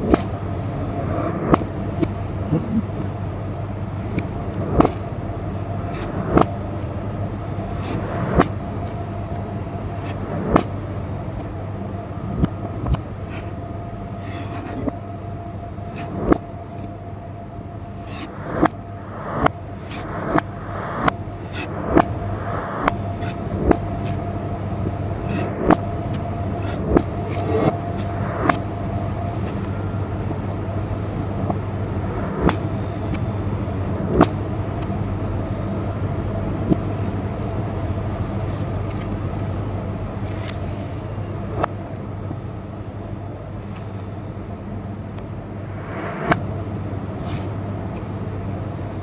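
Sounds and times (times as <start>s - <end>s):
steady low hum: 0.0s - 49.0s
knife cutting on cutting board: 25.2s - 29.9s.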